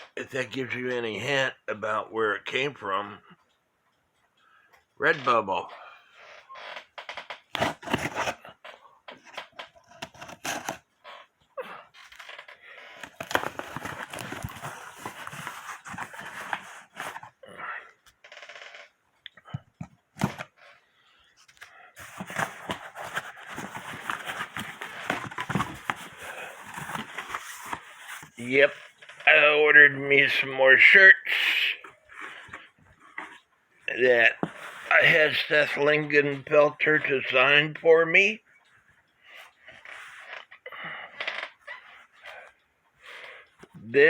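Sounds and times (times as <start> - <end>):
package wrapping tearing and rustling: 7.5 - 8.4, 9.3 - 10.9, 13.0 - 17.3, 22.0 - 28.4.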